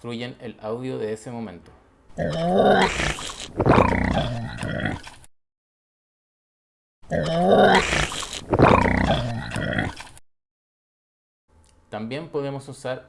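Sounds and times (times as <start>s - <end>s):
gulping swallows: 2.1s - 5.3s, 7.0s - 10.2s
pig chewing and grunting: 2.2s - 5.3s, 7.1s - 10.2s
wet tongue-stretching sound: 2.2s - 5.3s, 7.2s - 10.2s.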